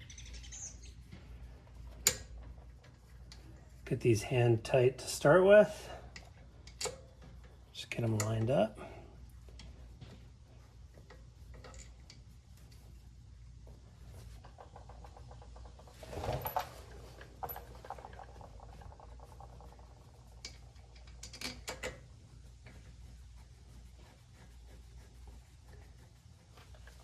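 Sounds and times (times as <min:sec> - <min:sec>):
steady low hum: 0:00.0 - 0:27.0
small metal clicks and rattles: 0:14.2 - 0:22.1.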